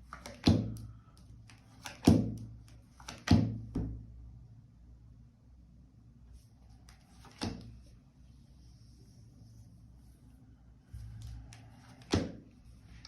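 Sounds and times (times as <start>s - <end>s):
cards slapped on a table: 1.8s - 4.0s, 7.2s - 7.7s, 12.0s - 12.4s.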